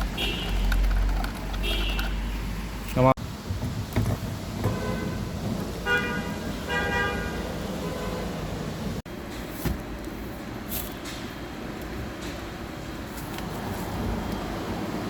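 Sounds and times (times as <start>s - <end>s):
car horn blasts: 0.2s - 0.7s, 1.6s - 2.2s, 4.7s - 8.3s.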